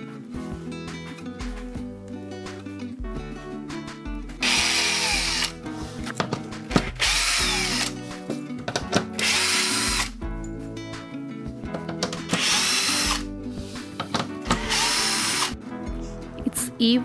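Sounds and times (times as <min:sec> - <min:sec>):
background music: 0:00.0 - 0:17.0
power drill running: 0:04.4 - 0:05.7, 0:06.7 - 0:08.2, 0:09.1 - 0:10.2, 0:12.1 - 0:13.3, 0:14.4 - 0:15.6.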